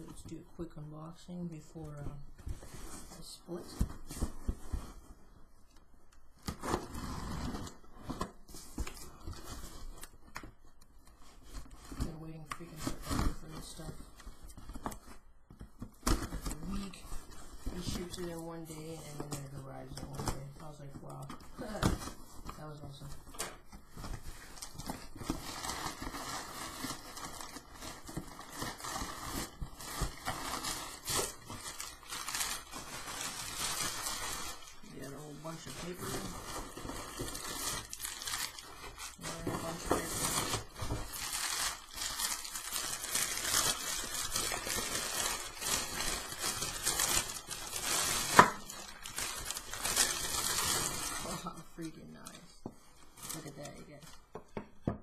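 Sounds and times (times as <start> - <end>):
paper and tape crinkling: 6.4 - 54.4.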